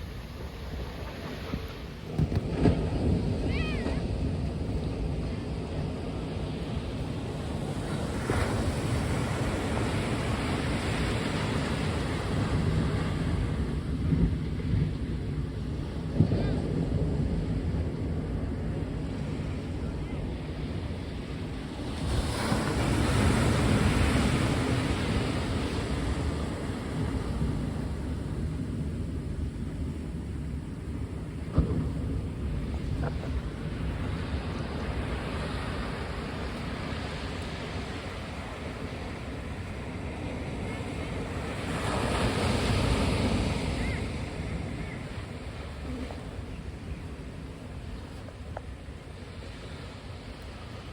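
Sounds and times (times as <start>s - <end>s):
ocean surf: 0.0s - 50.9s
wave breaking and washing in: 0.0s - 50.9s
wind buffeting microphone: 0.0s - 50.9s.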